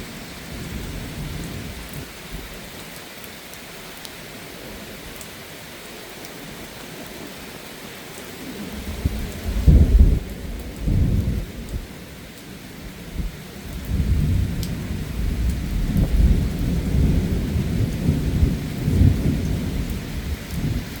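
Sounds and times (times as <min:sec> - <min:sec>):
heavy rain hiss: 0:00.0 - 0:21.0
thunder rumbling: 0:08.4 - 0:12.0, 0:13.1 - 0:21.0.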